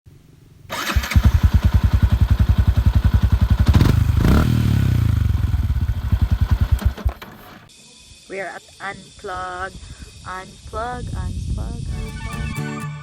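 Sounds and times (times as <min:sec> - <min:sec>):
small motorcycle engine idling: 0:00.6 - 0:07.7.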